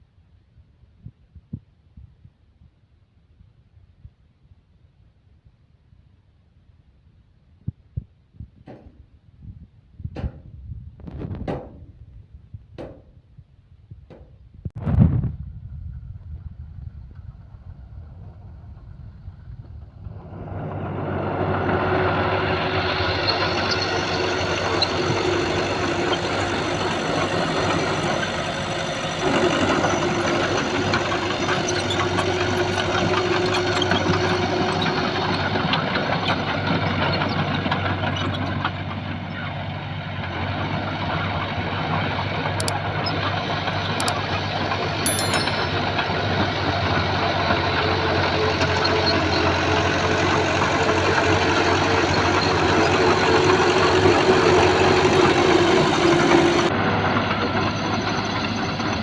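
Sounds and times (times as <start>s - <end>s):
heavy diesel engine droning: 20.0s - 59.0s.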